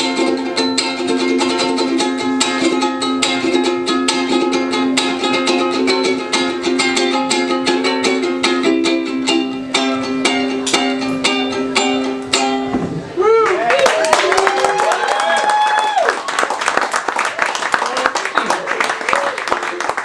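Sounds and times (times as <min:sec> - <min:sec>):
ukulele plucked and strummed: 0:00.0 - 0:13.3.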